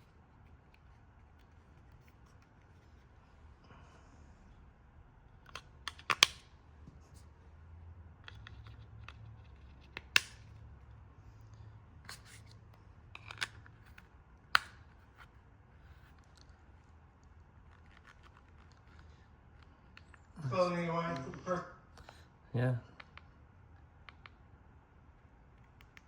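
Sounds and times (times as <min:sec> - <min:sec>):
plastic remote parts clicking: 0:05.4 - 0:06.5, 0:08.2 - 0:10.6, 0:24.0 - 0:24.4.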